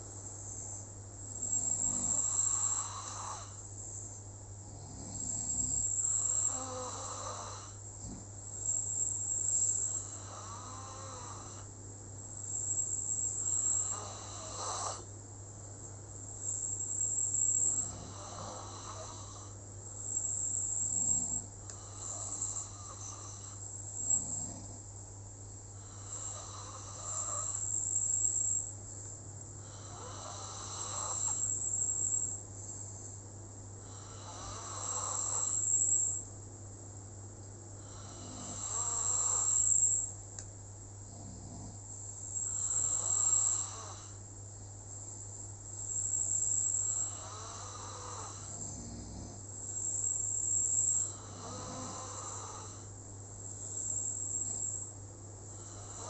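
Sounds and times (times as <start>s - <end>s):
person snoring: 1.3s - 3.6s, 4.7s - 8.3s, 9.6s - 11.7s, 13.4s - 15.1s, 17.7s - 19.6s, 20.8s - 24.8s, 25.8s - 27.8s, 29.6s - 31.7s, 33.8s - 36.2s, 37.8s - 40.1s, 41.1s - 44.2s, 46.7s - 52.9s, 55.5s - 56.0s.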